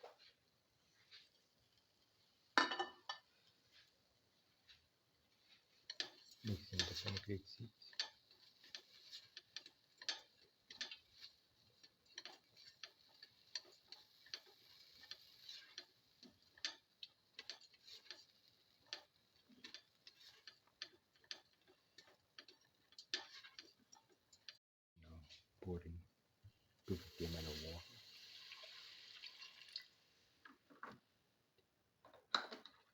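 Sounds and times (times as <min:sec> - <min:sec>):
faint sizzle: 0:00.0 - 0:30.7
spoon scraping frying pan: 0:01.0 - 0:24.6.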